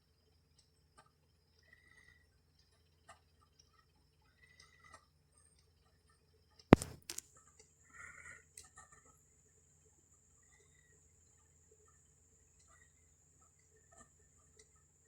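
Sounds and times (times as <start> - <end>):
plastic zip ties clicking: 6.8 - 7.2
sharp loud click: 6.8 - 7.2.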